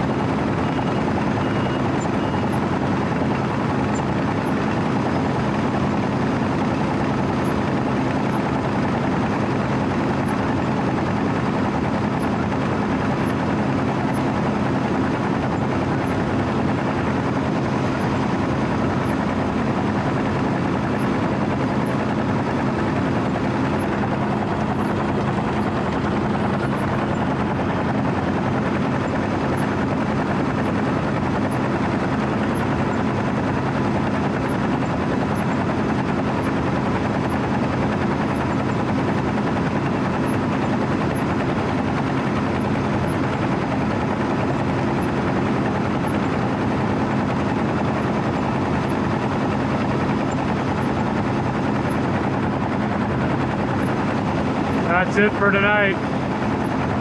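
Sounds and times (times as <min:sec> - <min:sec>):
heavy diesel engine rumbling: 0:45.7 - 0:57.0.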